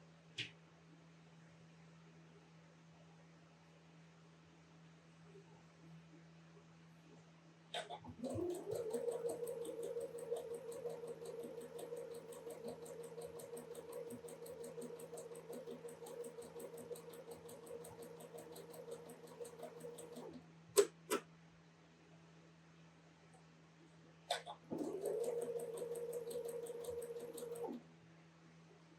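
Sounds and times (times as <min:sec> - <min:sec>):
sewing machine stitching: 0:07.8 - 0:20.9, 0:24.4 - 0:27.8.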